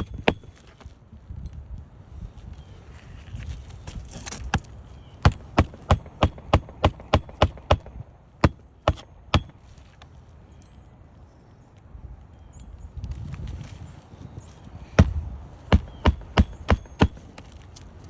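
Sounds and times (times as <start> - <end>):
hammer striking roofing nails: 0.0 - 0.6, 5.3 - 9.6, 15.0 - 17.3
scraping rustle: 2.2 - 5.0, 13.0 - 15.0.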